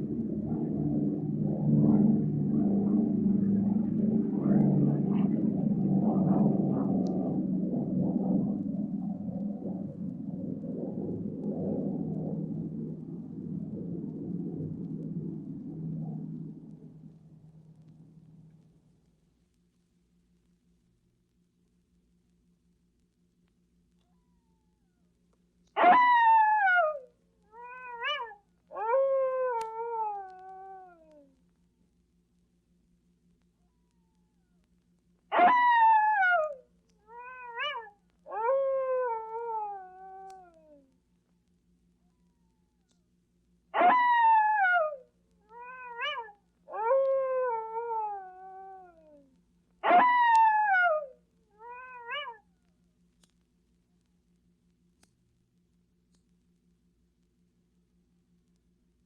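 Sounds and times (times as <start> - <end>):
coyote howling: 25.8 - 31.2, 35.3 - 40.8, 43.8 - 49.2, 49.8 - 52.4
faint click: 40.1 - 43.2, 52.6 - 57.4
coyote yelping: 43.8 - 47.4.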